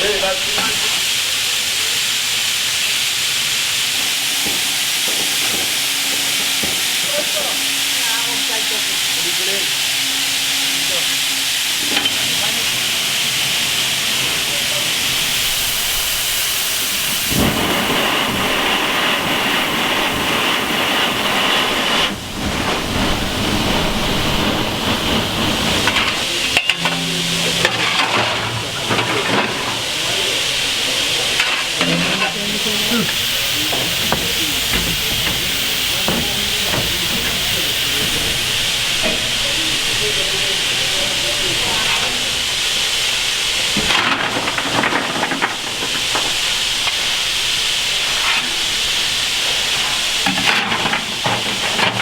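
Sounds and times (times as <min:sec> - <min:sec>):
steam hissing: 0:00.0 - 0:52.0
metal knocks and clanks: 0:31.4 - 0:39.4.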